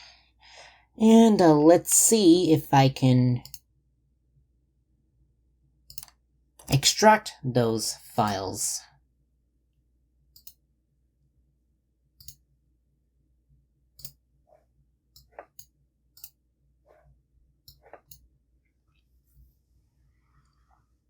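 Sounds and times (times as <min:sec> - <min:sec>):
computer mouse clicks: 0:03.4 - 0:03.6, 0:05.9 - 0:06.2, 0:10.4 - 0:10.6, 0:12.2 - 0:12.4, 0:14.0 - 0:14.2, 0:15.2 - 0:16.4.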